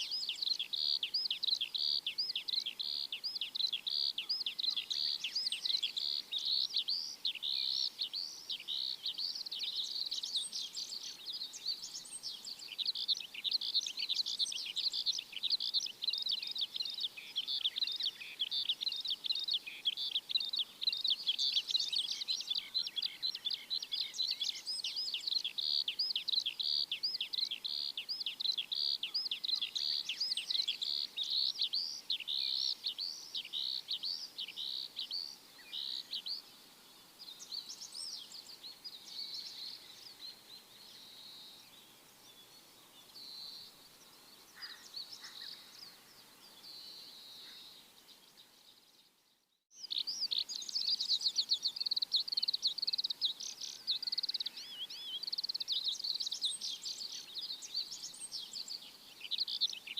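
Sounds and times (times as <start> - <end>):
small birds chirping rapidly: 0.0 - 59.9.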